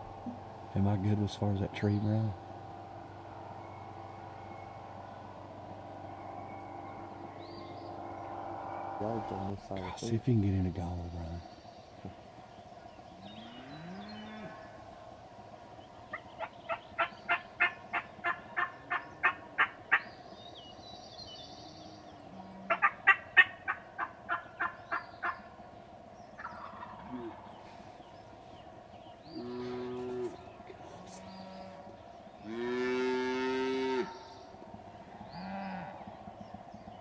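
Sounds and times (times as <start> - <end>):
turkey hen yelps: 16.1 - 20.1, 22.6 - 25.4.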